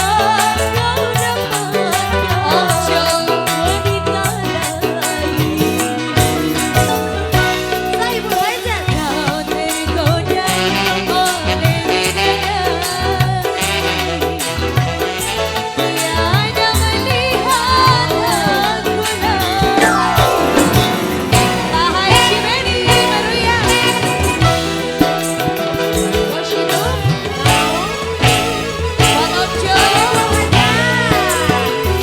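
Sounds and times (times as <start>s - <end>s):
person singing: 0.0s - 13.8s, 15.7s - 32.0s
band music with drums and bass: 0.0s - 32.0s
falling sweep: 19.6s - 25.6s.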